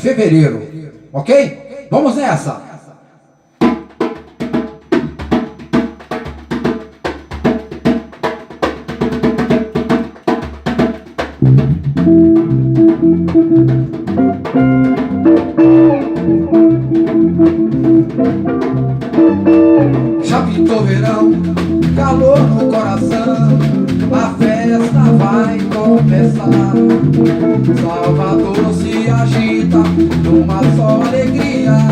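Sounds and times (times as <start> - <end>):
drums in steady rhythm: 3.6 - 31.9
bass and pitched instruments: 11.3 - 31.9.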